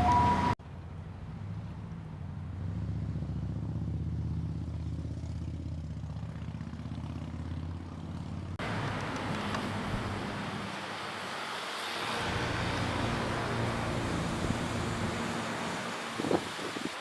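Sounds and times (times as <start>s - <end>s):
broad rushing noise: 8.6s - 17.0s
engine throbbing: 12.0s - 16.5s.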